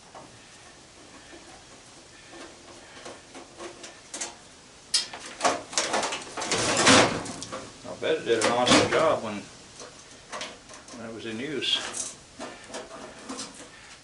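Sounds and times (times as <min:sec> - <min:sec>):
sheet metal clanking and rattling: 0:05.0 - 0:11.0, 0:11.8 - 0:13.8.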